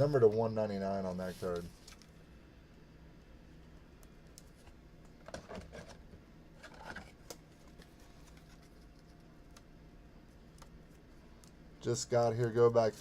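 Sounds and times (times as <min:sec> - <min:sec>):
trading cards rustling and scraping: 0:04.4 - 0:06.0, 0:06.6 - 0:09.3.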